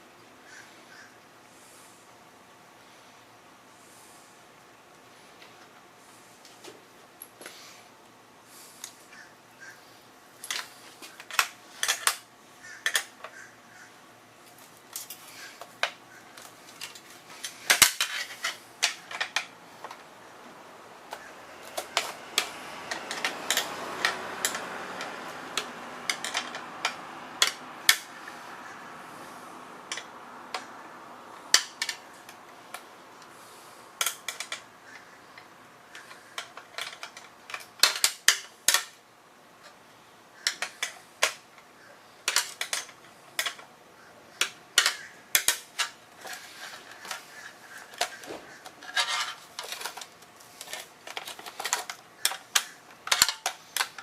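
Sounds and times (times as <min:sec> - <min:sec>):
metal tools clinking and knocking: 0:21.1 - 0:28.4, 0:44.8 - 0:54.0.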